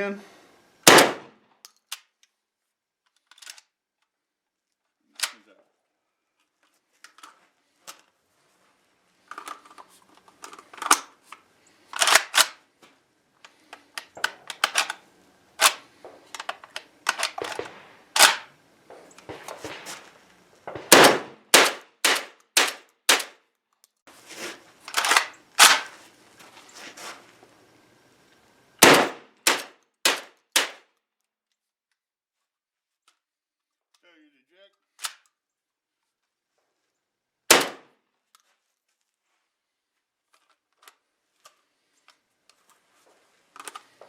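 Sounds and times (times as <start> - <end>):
shotgun shots: 0.8 - 1.4, 17.1 - 23.4, 28.8 - 30.8, 37.5 - 37.9.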